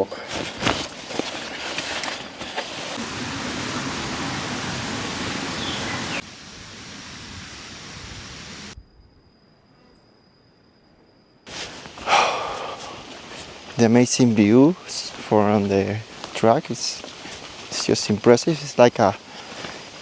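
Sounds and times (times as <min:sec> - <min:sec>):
faint high steady tone: 0:03.5 - 0:17.1.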